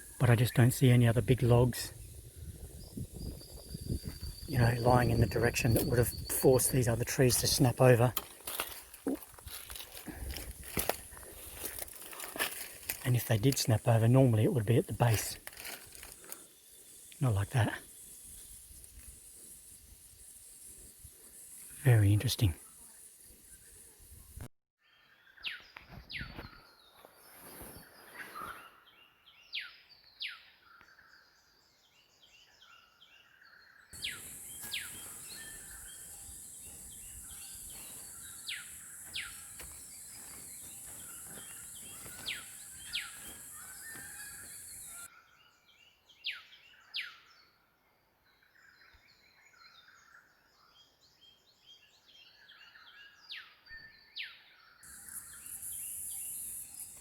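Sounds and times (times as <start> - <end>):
soft bird chirping: 0.0 - 24.4, 25.2 - 45.1
steady high-pitched hiss: 0.0 - 24.5, 34.0 - 45.1, 54.8 - 57.0
falling whistled bird calls: 34.0 - 45.1, 54.8 - 57.0.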